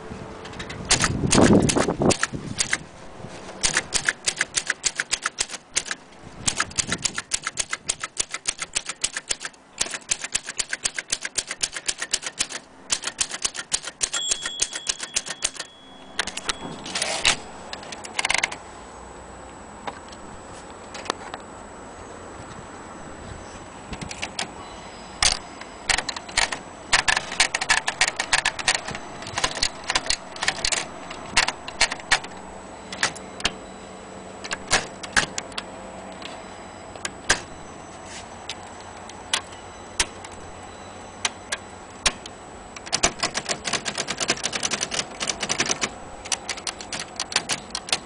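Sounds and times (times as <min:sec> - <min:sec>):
mechanical clunks: 0:03.5 - 0:18.6, 0:25.2 - 0:33.7, 0:34.4 - 0:37.7
typewriter keys clacking: 0:03.6 - 0:17.4, 0:25.2 - 0:32.3, 0:42.9 - 0:48.0.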